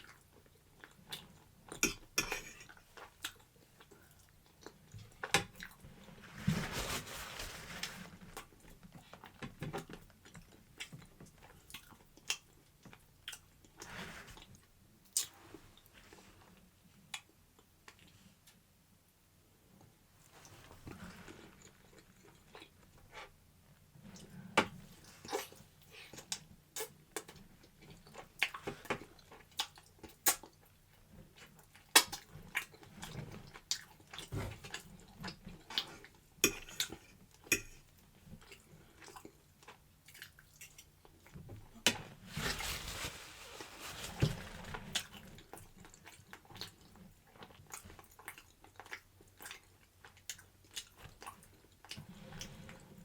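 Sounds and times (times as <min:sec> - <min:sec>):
rustling or rubbing: 0:06.2 - 0:08.2, 0:42.0 - 0:45.0.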